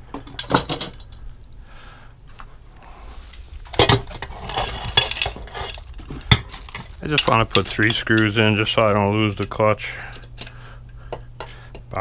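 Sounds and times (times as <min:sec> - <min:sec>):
small metal parts clinking: 0:03.7 - 0:08.4.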